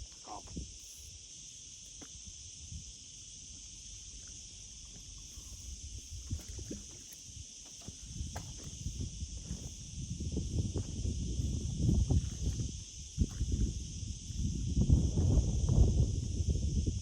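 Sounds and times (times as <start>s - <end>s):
wind rumble on microphone: 0.0s - 0.9s, 2.1s - 3.0s, 4.8s - 17.0s
insect drone: 0.0s - 17.0s.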